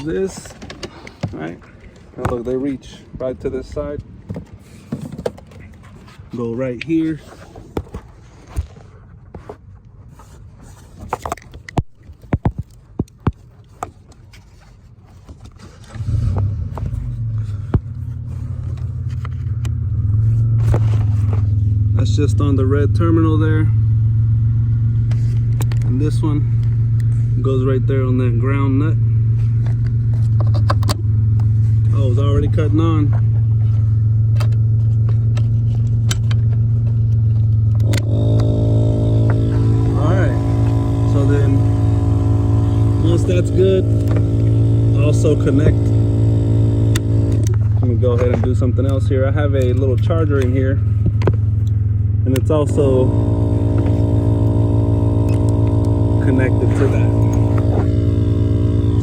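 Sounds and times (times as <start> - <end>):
motor droning: 15.8 - 59.0
air compressor humming: 31.4 - 59.0.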